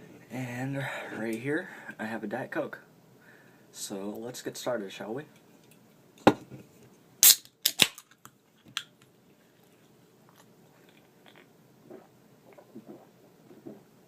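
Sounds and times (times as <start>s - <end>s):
can opening fizzing snap: 7.2s - 8.2s.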